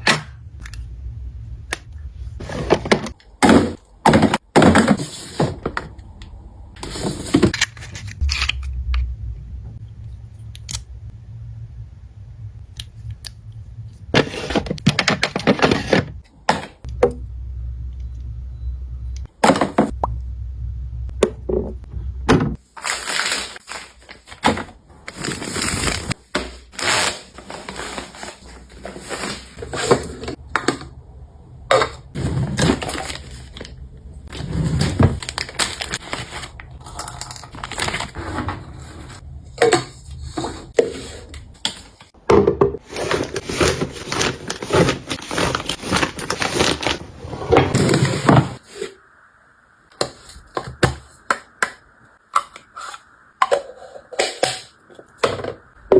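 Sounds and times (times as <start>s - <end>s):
plastic packaging crinkling: 22.8s - 30.1s, 32.5s - 38.2s, 42.8s - 47.8s.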